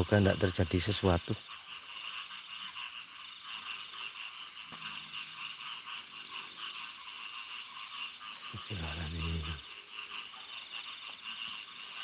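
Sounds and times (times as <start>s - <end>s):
insects and frogs chirring: 0.0s - 12.0s.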